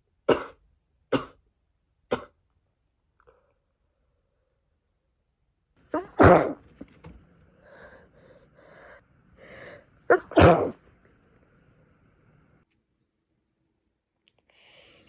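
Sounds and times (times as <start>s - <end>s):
woman sneezing: 6.0s - 6.6s, 10.1s - 10.8s.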